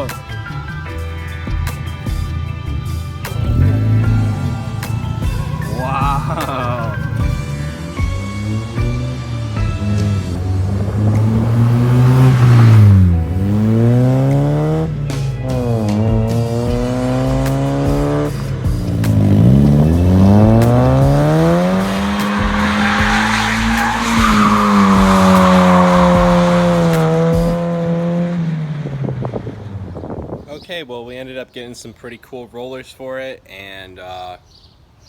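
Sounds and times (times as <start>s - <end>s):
car engine revving: 0.4s - 30.4s
tyres squealing: 3.4s - 7.4s, 18.9s - 27.2s.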